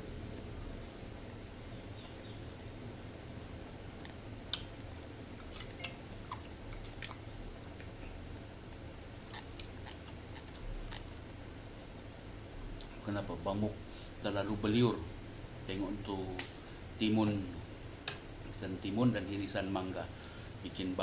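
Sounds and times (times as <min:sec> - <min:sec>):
chewing crisp raw fruit: 0:04.0 - 0:11.4.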